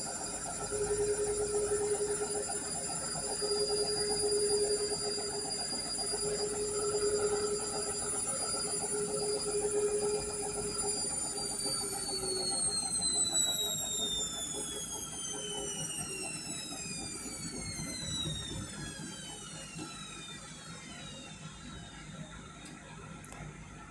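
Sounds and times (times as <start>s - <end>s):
washing machine spinning down: 0.0s - 23.9s.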